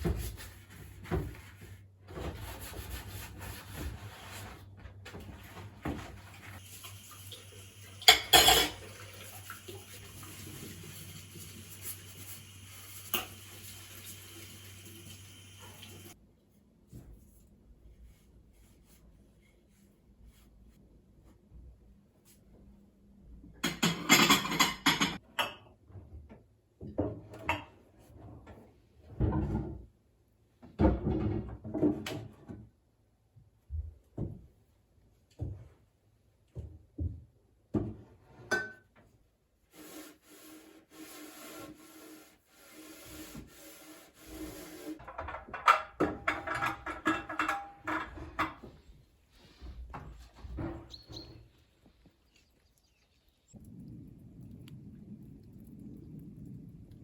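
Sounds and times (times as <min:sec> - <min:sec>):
scrubbing on a hard surface: 0:39.7 - 0:45.0.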